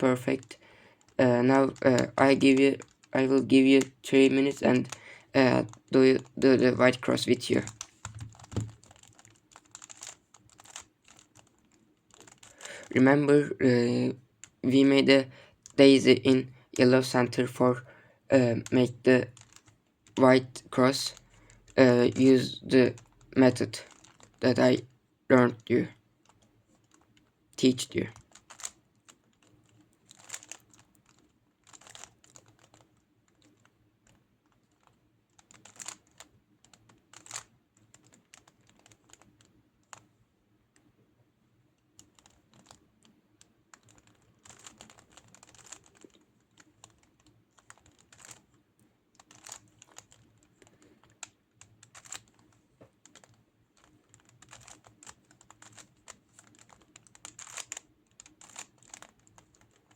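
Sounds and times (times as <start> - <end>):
plastic cube clicking: 0.4 - 3.1, 7.0 - 12.9, 18.6 - 20.3, 21.1 - 24.9, 25.6 - 40.1, 41.9 - 48.6, 49.2 - 59.9.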